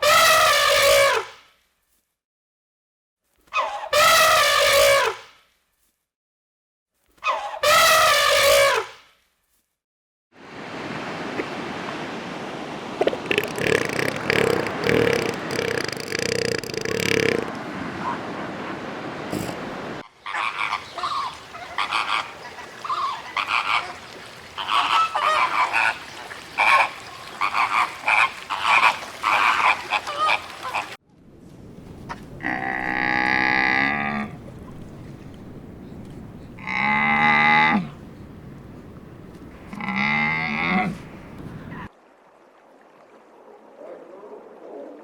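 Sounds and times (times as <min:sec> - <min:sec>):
frogs croaking: 0:13.0 - 0:17.6
farm animal calling: 0:13.1 - 0:17.5.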